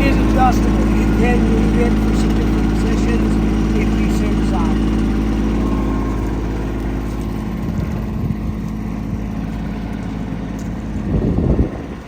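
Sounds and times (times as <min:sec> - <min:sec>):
tractor diesel engine running: 0:00.0 - 0:12.0.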